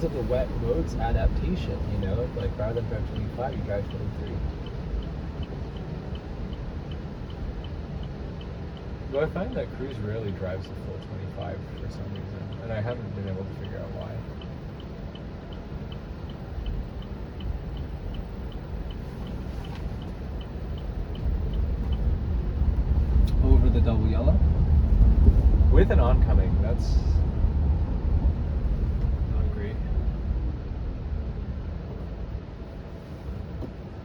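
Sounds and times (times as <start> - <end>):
tyre and road rumble: 0.0 - 10.8, 11.5 - 34.0
high ticking: 0.0 - 26.1.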